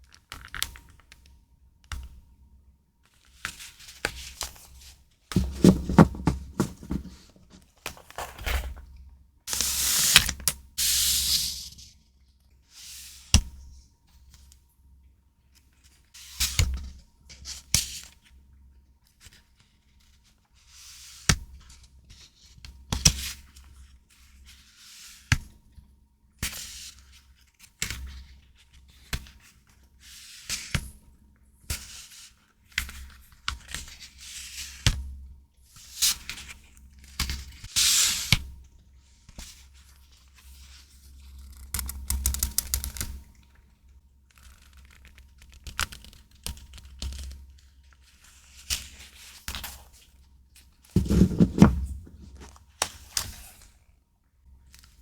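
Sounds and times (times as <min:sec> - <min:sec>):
packaging rustling and crinkling: 0:05.4 - 0:08.9, 0:51.0 - 0:52.5.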